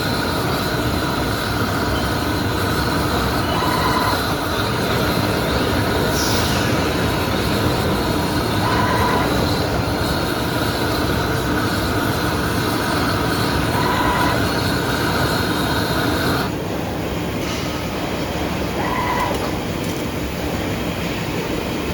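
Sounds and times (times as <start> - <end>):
metal spinning machine running: 0.0 - 21.9
falling whistle: 3.4 - 4.3, 8.6 - 9.5, 13.7 - 14.5.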